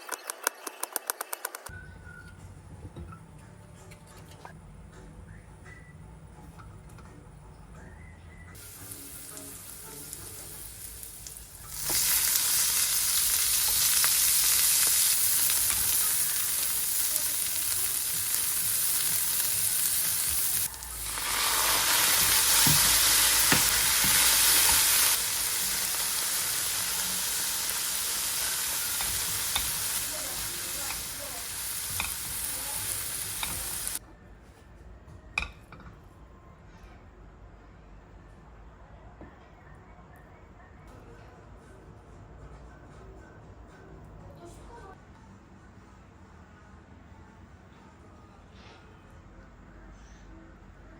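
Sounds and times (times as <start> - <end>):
food sizzling in hot oil: 8.6 - 34.0.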